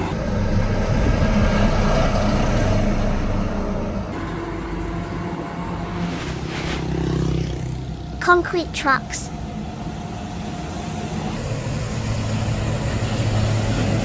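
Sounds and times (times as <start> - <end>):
truck engine droning: 0.0 - 14.0
rushing noise: 4.1 - 14.0.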